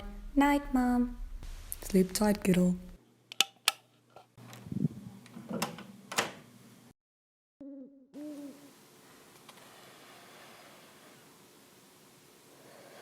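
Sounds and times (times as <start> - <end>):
door shutting: 5.4 - 6.5.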